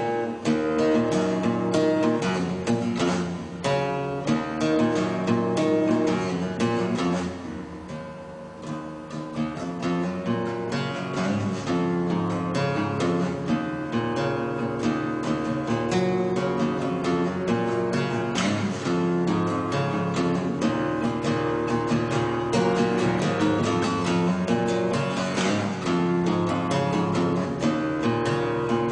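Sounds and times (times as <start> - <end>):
acoustic guitar music: 0.0 - 28.9.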